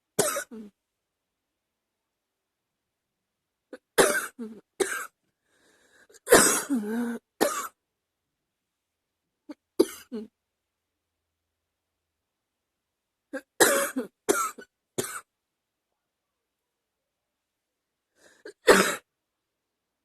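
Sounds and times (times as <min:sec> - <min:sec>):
woman coughing: 0:00.2 - 0:00.7, 0:03.8 - 0:05.1, 0:06.2 - 0:07.8, 0:09.8 - 0:10.3, 0:13.4 - 0:15.3, 0:18.5 - 0:19.1
faint breath in: 0:05.3 - 0:06.2.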